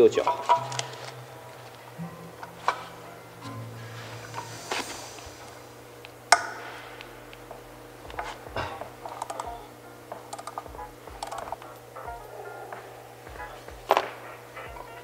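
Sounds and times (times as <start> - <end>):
sharp metal clank: 1.9 - 7.0
metallic clicks and taps: 10.3 - 11.6.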